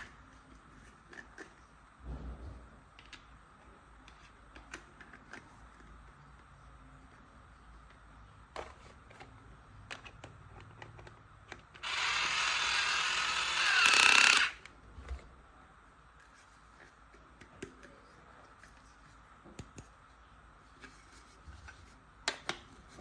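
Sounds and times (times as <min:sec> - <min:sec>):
electric drill motor running: 0:11.8 - 0:14.7.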